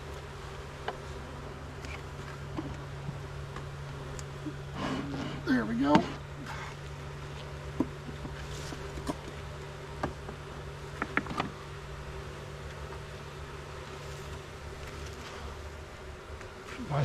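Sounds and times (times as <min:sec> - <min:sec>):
bees buzzing: 0:00.0 - 0:17.0
clicks and knocks of wooden hive: 0:06.8 - 0:11.6.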